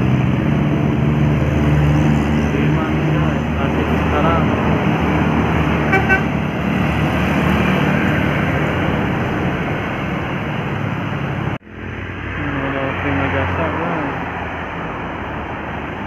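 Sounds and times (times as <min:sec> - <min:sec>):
road traffic noise: 0:00.0 - 0:16.0.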